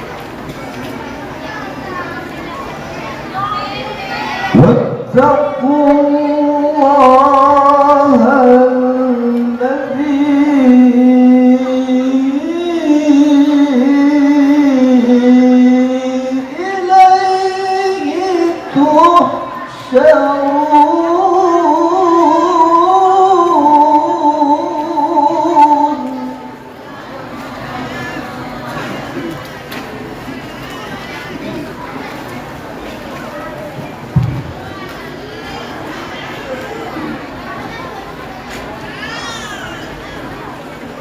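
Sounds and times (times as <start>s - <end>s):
man reciting melodically: 4.5s - 26.6s.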